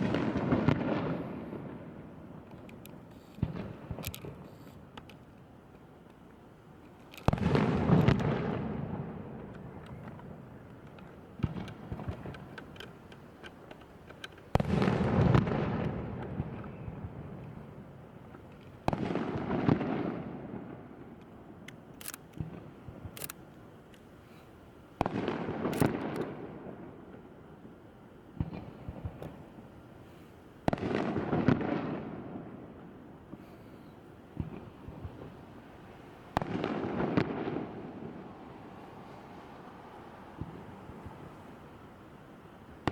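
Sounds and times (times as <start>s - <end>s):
firework shells booming: 0.0s - 4.5s, 7.2s - 13.1s, 14.5s - 17.7s, 36.3s - 38.2s
small bangs and crackles: 0.0s - 23.4s, 25.0s - 27.2s, 28.4s - 29.4s, 30.6s - 32.6s, 34.3s - 35.6s, 36.3s - 38.3s.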